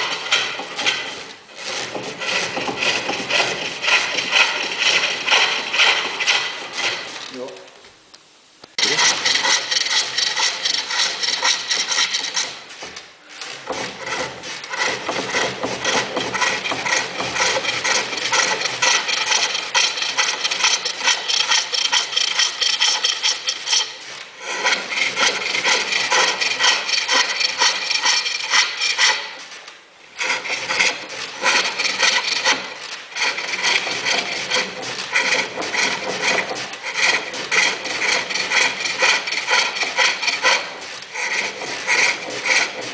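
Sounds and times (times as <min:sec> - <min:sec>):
lathe tool chattering cut: 0:08.8 - 0:12.5, 0:14.0 - 0:29.3, 0:30.2 - 0:42.8.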